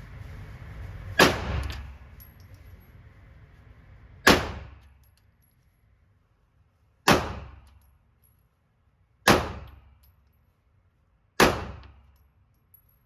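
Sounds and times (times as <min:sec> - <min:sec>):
gunshots with ringing echo: 0:07.1 - 0:07.6, 0:09.3 - 0:09.7.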